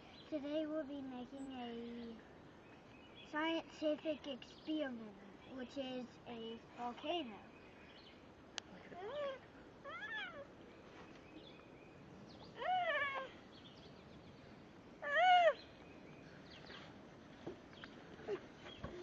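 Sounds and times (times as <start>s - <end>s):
animal calling: 12.5s - 13.5s, 15.0s - 15.8s.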